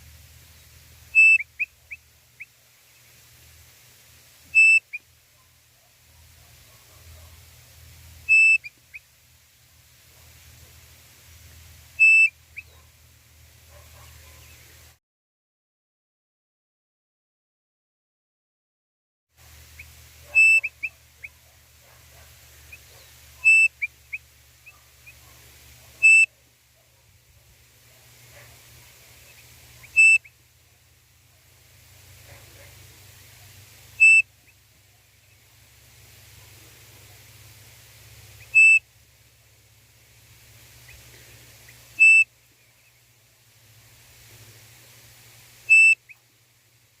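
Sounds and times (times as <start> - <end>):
faint short chirps: 1.1 - 2.0, 4.5 - 5.0, 8.3 - 8.7, 12.0 - 12.8, 19.8 - 21.4, 23.4 - 23.9, 26.0 - 26.3, 29.3 - 30.3, 34.0 - 34.6, 38.4 - 38.8, 42.0 - 42.3, 45.7 - 46.2
quail call whistle: 1.1 - 2.5, 4.5 - 5.0, 8.2 - 9.0, 12.0 - 12.8, 19.8 - 21.4, 23.4 - 25.2, 26.0 - 26.4, 29.3 - 30.4, 34.0 - 34.3, 38.4 - 38.9, 42.0 - 42.3, 45.7 - 46.2.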